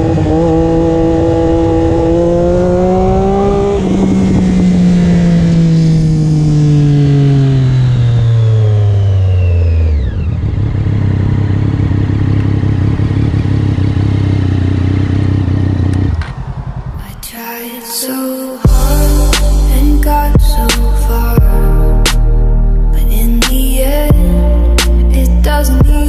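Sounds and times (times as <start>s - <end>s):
motorcycle engine revving: 0.0s - 17.3s
music: 18.4s - 26.0s.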